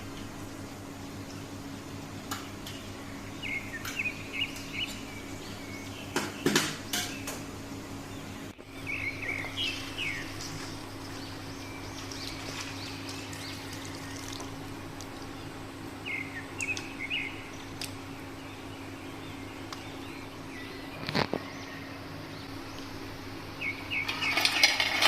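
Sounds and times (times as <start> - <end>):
birds chirping: 0.0 - 25.0
steady low hum: 0.0 - 25.0.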